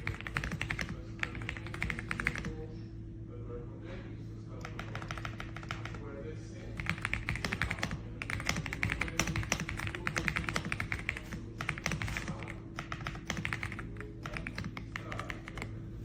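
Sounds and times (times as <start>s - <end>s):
mechanical keyboard typing: 0.0s - 2.6s, 4.6s - 6.0s, 6.8s - 15.7s.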